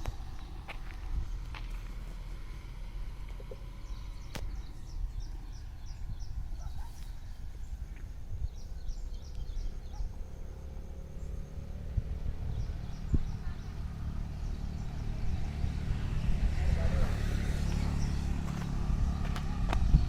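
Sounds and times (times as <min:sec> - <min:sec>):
slowly moving car rumble: 0:00.0 - 0:20.0
bird chirping: 0:03.2 - 0:16.5.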